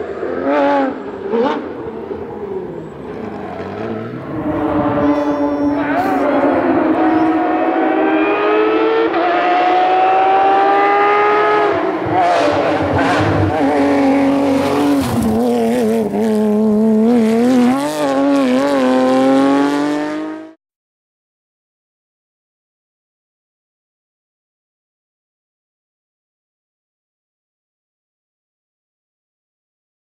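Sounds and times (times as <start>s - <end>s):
car engine revving at high revs: 0.0s - 20.6s.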